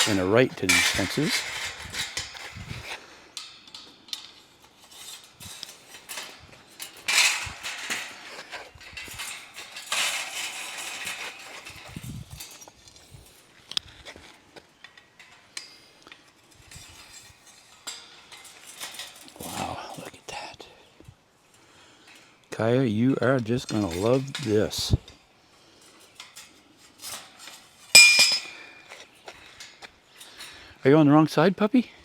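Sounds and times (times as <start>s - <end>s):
metal wire fence panels rattling: 0.0s - 2.6s, 3.7s - 13.4s, 23.5s - 25.0s, 25.8s - 28.8s.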